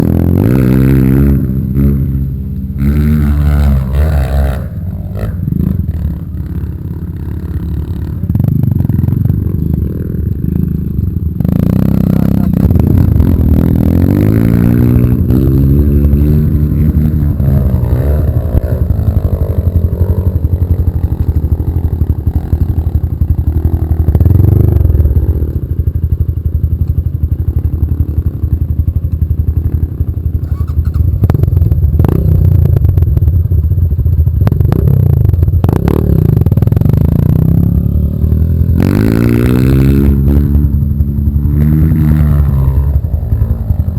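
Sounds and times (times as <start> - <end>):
motorcycle engines revving: 0.0 - 43.9.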